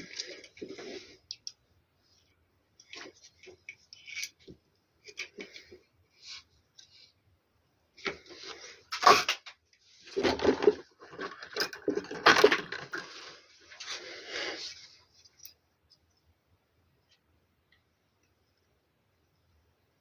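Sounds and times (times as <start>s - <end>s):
clicks and scrapes of handling: 2.2s - 7.2s.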